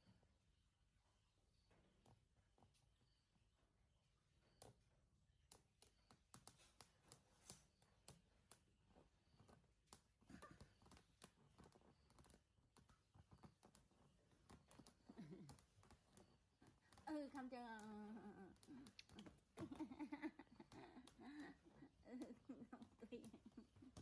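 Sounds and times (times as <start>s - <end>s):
faint clicks: 9.4s - 24.0s.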